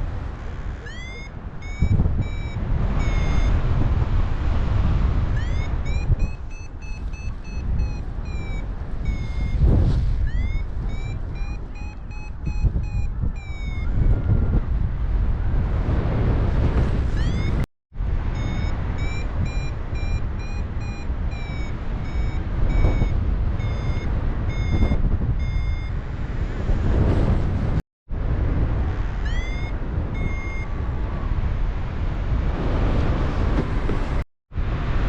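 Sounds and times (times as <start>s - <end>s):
wind rush on microphone: 0.0s - 35.0s
rising electronic chirp: 0.8s - 3.6s, 5.4s - 9.6s, 10.2s - 14.0s, 17.2s - 17.6s, 18.4s - 25.9s, 29.3s - 30.6s
variometer beeping: 0.8s - 3.6s, 5.4s - 14.3s, 17.2s - 17.7s, 18.4s - 26.0s, 29.2s - 30.7s.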